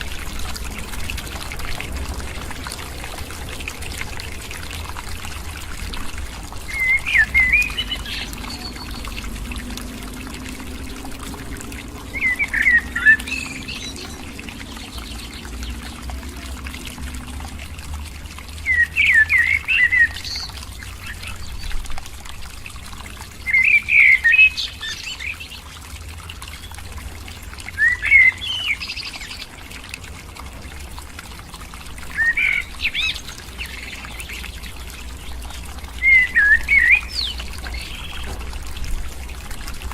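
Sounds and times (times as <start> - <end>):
bird chirping: 6.7 - 9.2.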